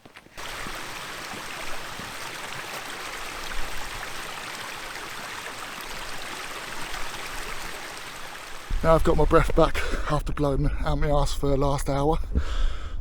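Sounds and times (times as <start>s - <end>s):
stream rushing water: 0.3s - 9.7s.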